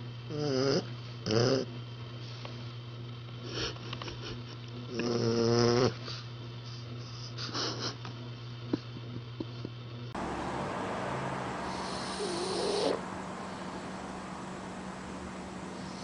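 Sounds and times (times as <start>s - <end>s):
puppy snoring: 0.3s - 1.8s, 4.9s - 6.1s, 11.7s - 13.0s.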